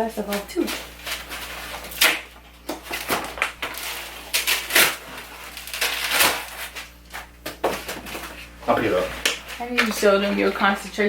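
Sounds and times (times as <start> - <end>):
packaging crinkling and rustling: 0.1 - 10.9.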